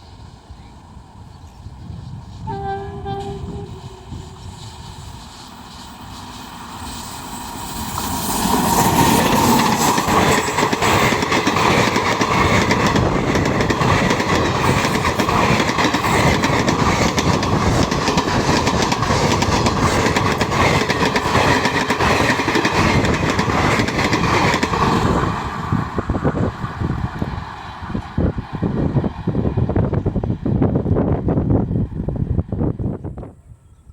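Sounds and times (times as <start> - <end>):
train wheels clattering over rail joints: 7.9 - 25.4.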